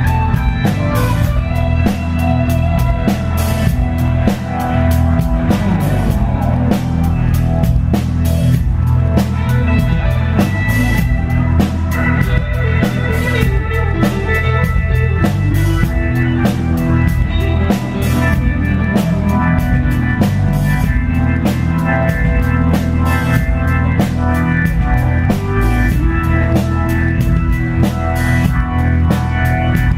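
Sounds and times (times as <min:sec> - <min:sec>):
blues-rock band playing: 0:00.0 - 0:29.9
drum-kit beat: 0:00.0 - 0:29.9
electric guitar: 0:00.0 - 0:29.9.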